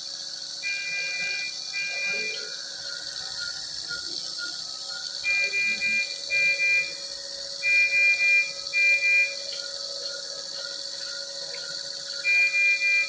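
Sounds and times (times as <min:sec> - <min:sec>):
short faint beeps: 0:00.7 - 0:02.4
long high electronic beeps: 0:00.7 - 0:02.5, 0:05.2 - 0:07.0.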